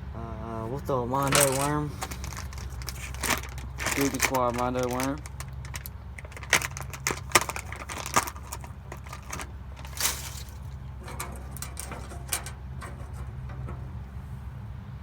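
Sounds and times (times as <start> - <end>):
fishing tackle clicking and rattling: 1.2 - 14.0
steady low hum: 5.2 - 15.0.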